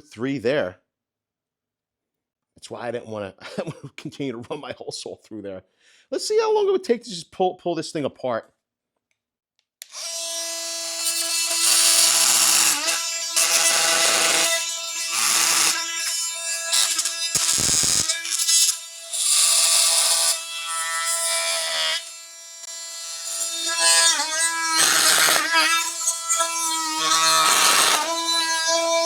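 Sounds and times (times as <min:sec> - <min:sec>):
oscillating multi-tool cutting wood: 0:09.8 - 0:29.0.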